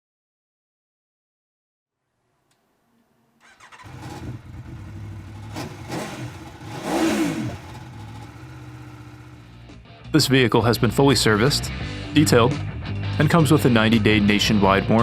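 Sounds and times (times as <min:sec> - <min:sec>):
engine throttle blips: 0:03.4 - 0:09.7
motorcycle engine starting and idling: 0:03.4 - 0:09.8.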